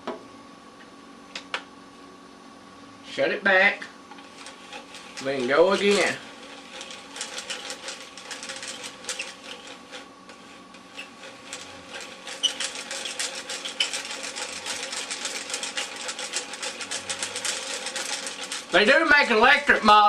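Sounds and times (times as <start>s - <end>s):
abrasive wheel sanding disc: 4.1s - 20.0s
hand-cranked gears clicking: 4.3s - 10.0s, 10.9s - 19.4s.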